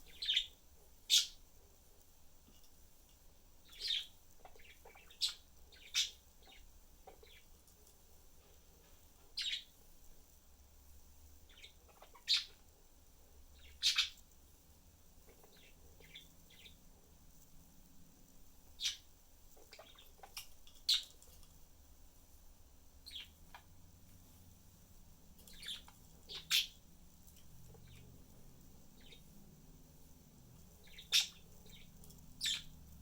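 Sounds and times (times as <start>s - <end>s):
budgerigars chirping: 0.1s - 1.4s, 3.7s - 7.4s, 9.4s - 9.7s, 11.5s - 12.6s, 13.6s - 14.2s, 15.3s - 16.8s, 18.7s - 19.0s, 19.6s - 21.1s, 23.0s - 23.7s, 25.4s - 26.8s, 27.8s - 28.2s, 28.9s - 29.3s, 30.8s - 33.0s.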